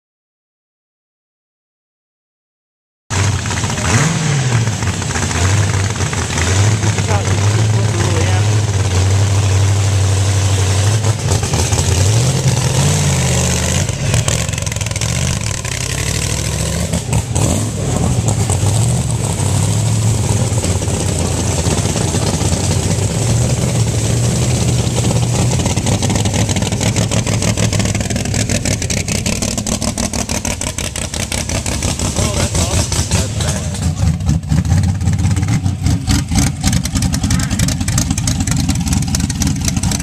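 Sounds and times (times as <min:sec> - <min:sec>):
engine revving: 0:03.1 - 0:40.0
rapid ticking clatter: 0:36.1 - 0:40.0.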